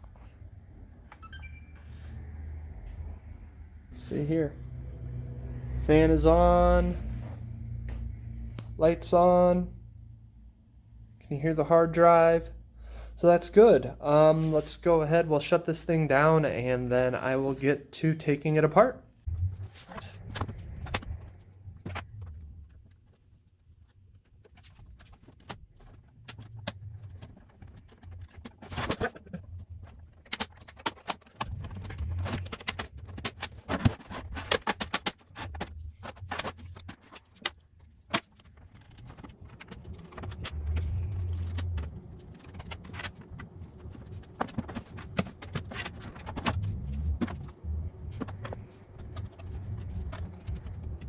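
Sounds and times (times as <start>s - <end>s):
clicks taps and rattles of handling: 19.8s - 51.0s
dull bumps: 31.3s - 51.0s.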